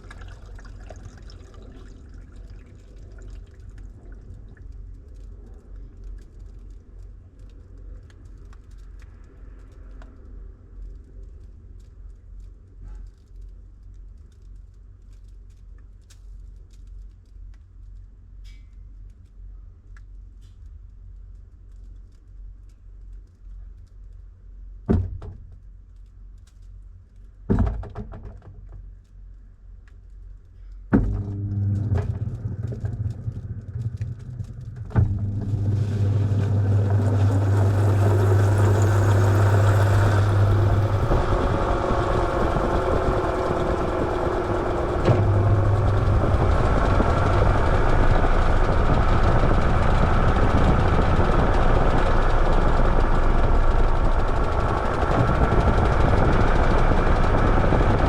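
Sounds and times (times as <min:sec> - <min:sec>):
steady low hum: 0:28.9 - 0:58.0
washing machine clicks and thunks: 0:31.0 - 0:32.2.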